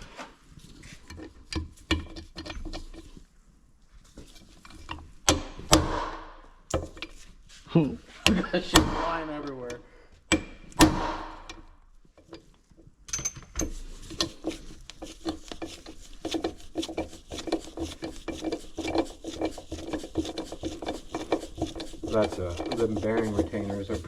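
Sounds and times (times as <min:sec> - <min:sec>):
clicks and scraping on metal parts: 0:00.8 - 0:03.2, 0:04.1 - 0:07.4, 0:08.2 - 0:24.0
sharp knock: 0:05.3 - 0:07.0, 0:08.7 - 0:09.4, 0:10.8 - 0:11.5.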